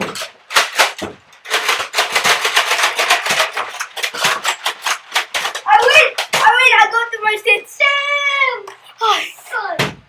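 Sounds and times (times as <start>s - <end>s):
sharp clicks and clattering knocks: 0.0s - 6.7s.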